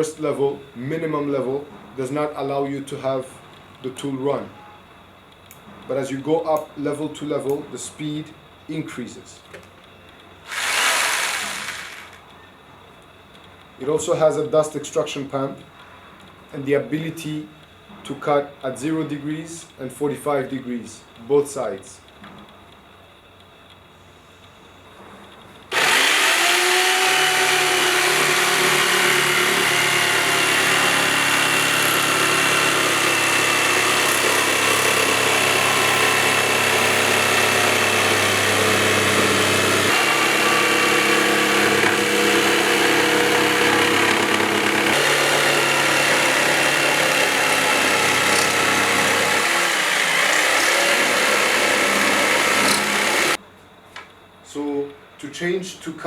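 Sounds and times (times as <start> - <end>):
electric jigsaw running: 10.5 - 12.2, 25.7 - 53.4.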